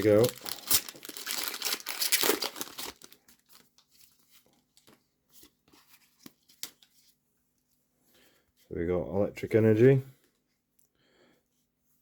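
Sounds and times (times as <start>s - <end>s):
foil wrapper crinkling: 0.0s - 4.1s.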